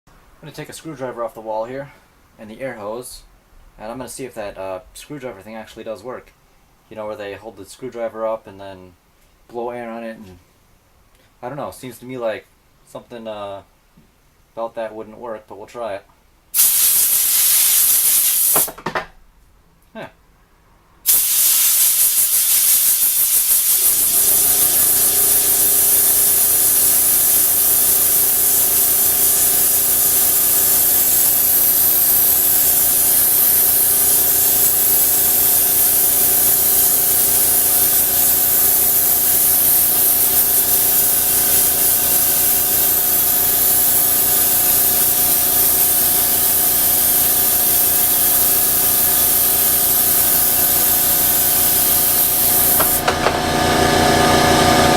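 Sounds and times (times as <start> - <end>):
compressed air hissing from hose: 16.6 - 18.8, 21.0 - 53.1
steady multi-tone hum: 22.3 - 54.9.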